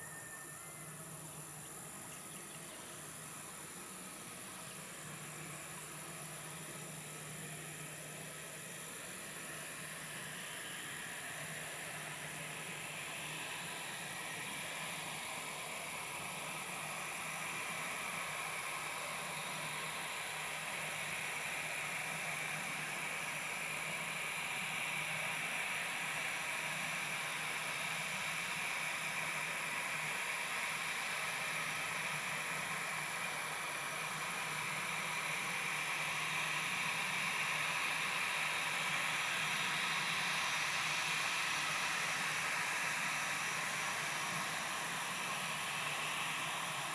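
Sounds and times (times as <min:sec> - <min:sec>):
distant jet engine whine: 0:00.0 - 0:46.9.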